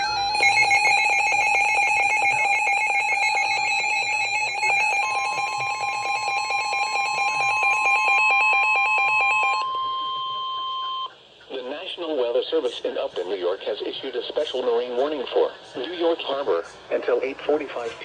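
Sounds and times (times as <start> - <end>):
pulsing electronic alarm: 0.0 - 11.2.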